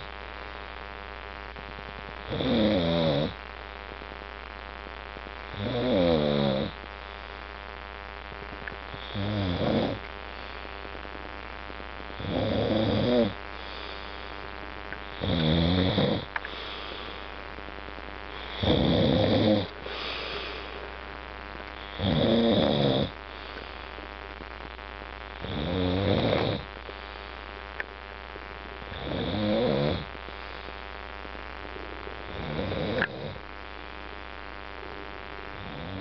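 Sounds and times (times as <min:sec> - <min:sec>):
man snoring heavily: 0:02.2 - 0:03.4, 0:05.5 - 0:06.8, 0:09.0 - 0:10.0, 0:12.2 - 0:14.2, 0:15.2 - 0:17.2, 0:18.3 - 0:20.9, 0:21.8 - 0:23.6, 0:25.4 - 0:26.7, 0:28.9 - 0:30.2, 0:32.3 - 0:33.4, 0:35.6 - 0:36.0
soft breath out: 0:13.5 - 0:14.4, 0:16.4 - 0:17.4, 0:19.8 - 0:21.0, 0:23.3 - 0:24.0.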